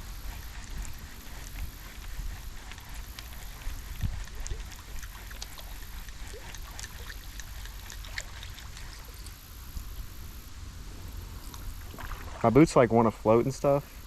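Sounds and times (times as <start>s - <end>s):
water splashing around wading legs: 3.0s - 9.4s, 11.8s - 12.6s.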